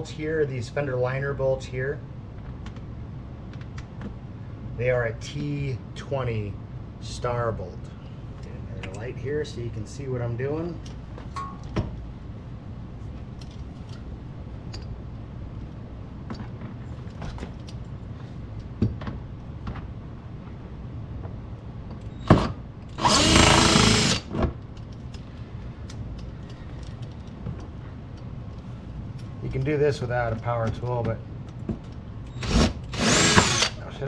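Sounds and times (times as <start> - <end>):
power drill-driver running: 23.0 - 24.3, 32.4 - 33.8.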